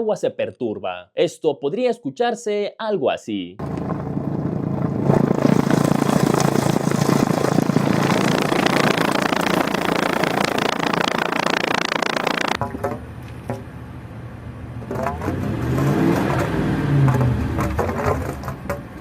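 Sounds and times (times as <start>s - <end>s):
car exhaust gurgling sputter: 3.6s - 12.6s.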